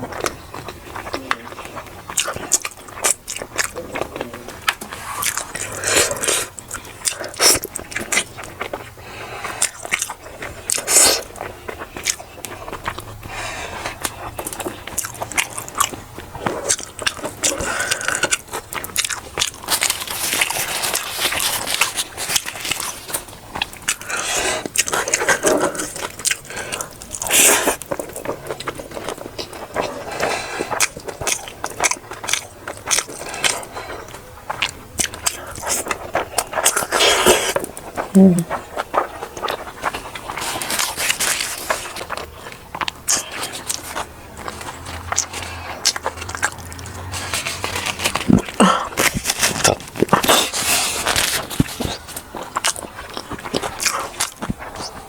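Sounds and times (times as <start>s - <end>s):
crunching: 0.0s - 55.0s
person chewing food: 0.0s - 55.0s
wet mouth clicks and smacks: 44.6s - 50.3s.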